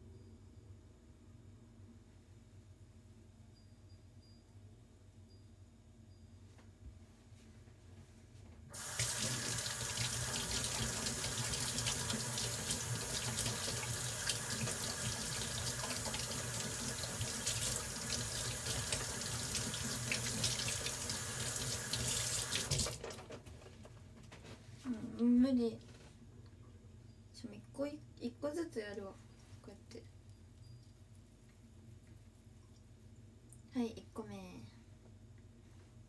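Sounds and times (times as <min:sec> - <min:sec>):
water running into a sink: 0:08.7 - 0:23.3.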